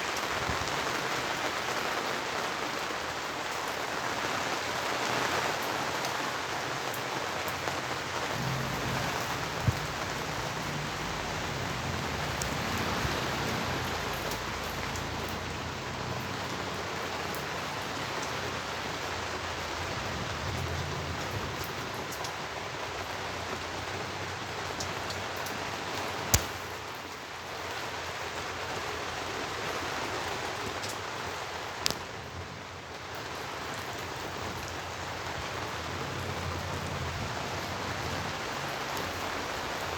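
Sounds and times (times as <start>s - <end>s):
rain falling: 0.0s - 39.9s
wind gusting: 7.6s - 20.6s.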